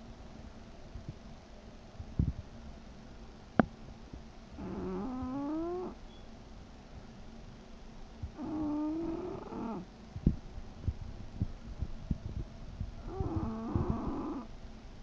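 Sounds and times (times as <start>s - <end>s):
dog snoring: 4.6s - 6.0s, 8.3s - 9.9s, 13.0s - 14.5s.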